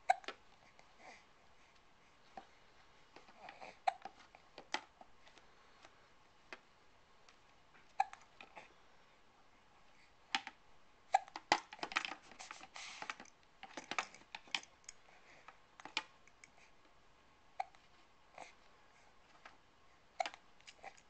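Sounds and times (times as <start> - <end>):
baby hiccuping: 0.0 - 0.3, 3.5 - 4.0, 7.9 - 8.3, 11.1 - 11.4, 17.6 - 17.8
small clicks and rattles: 11.3 - 16.6.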